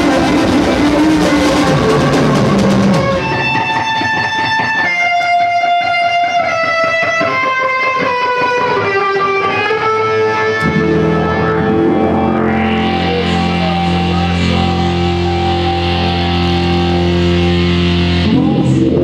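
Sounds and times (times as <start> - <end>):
heavy low chord with bass: 0.0 - 4.1, 10.5 - 19.0
electric guitar lead notes: 0.0 - 19.0.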